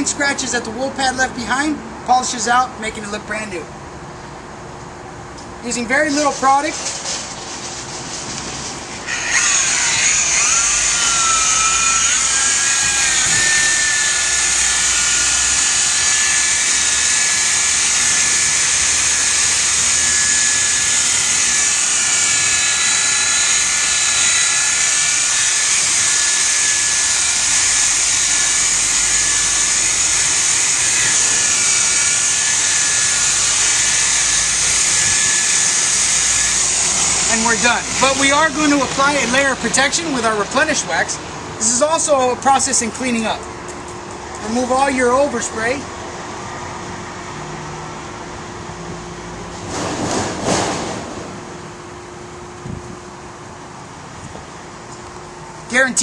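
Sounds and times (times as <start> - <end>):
electric polisher whining: 9.0 - 38.2.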